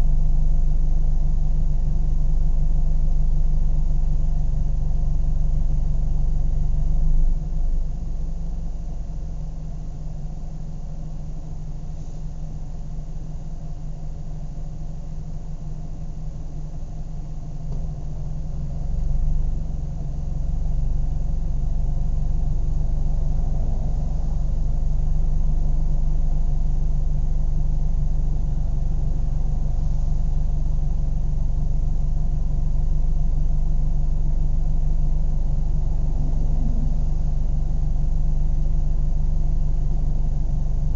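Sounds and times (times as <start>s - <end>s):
car engine humming: 15.0s - 40.9s.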